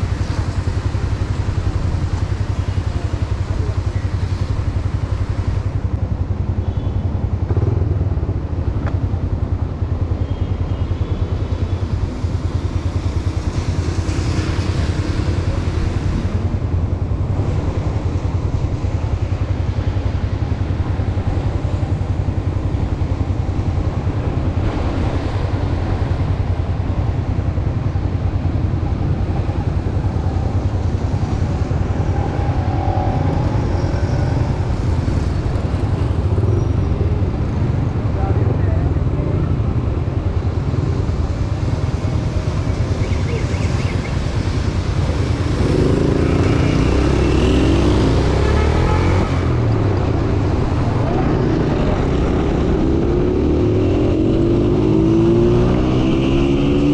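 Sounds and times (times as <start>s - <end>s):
road noise: 0.0s - 56.9s.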